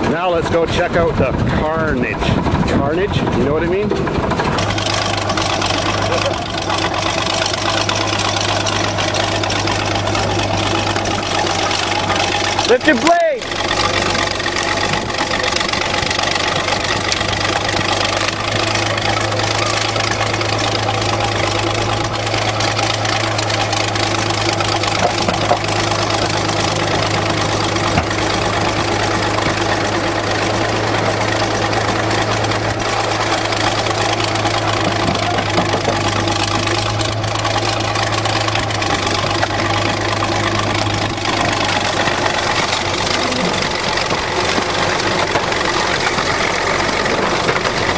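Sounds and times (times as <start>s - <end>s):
engine idling with knocking: 0.0s - 47.9s.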